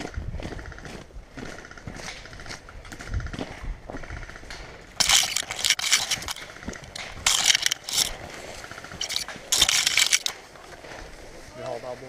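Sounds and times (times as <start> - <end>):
rustling and crunching: 4.9 - 11.7.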